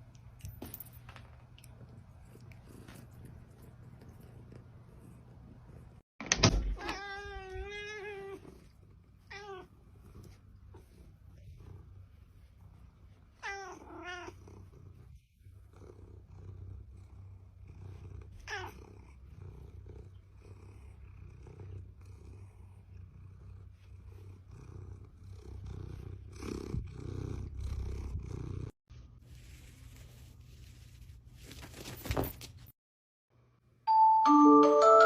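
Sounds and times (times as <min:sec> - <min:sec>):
cat purring: 0:01.5 - 0:06.0, 0:08.4 - 0:13.4, 0:14.2 - 0:28.8.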